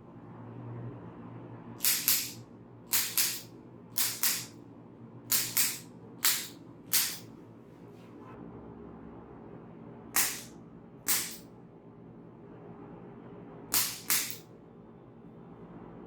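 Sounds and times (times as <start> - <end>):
sharp hissing bursts: 1.8 - 4.5, 5.3 - 7.2, 10.2 - 10.5, 13.7 - 14.4.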